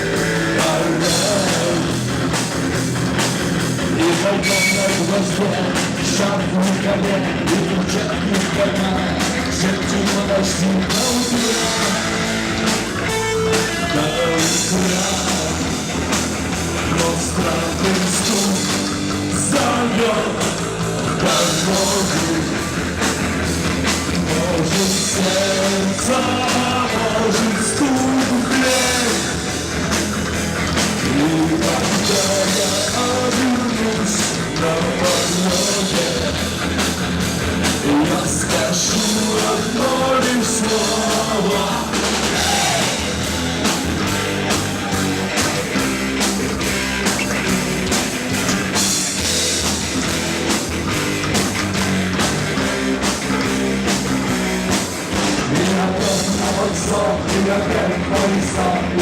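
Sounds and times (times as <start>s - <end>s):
drum kit: 0.0s - 59.0s
rock band playing live: 0.0s - 59.0s
person singing: 0.2s - 2.1s, 3.9s - 15.9s, 16.7s - 22.7s, 24.0s - 29.6s, 31.0s - 36.5s, 37.7s - 43.2s, 55.4s - 59.0s.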